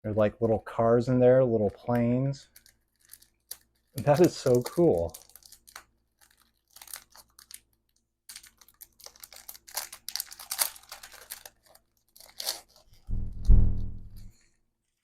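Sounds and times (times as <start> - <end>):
plastic packaging crinkling: 2.5 - 13.1.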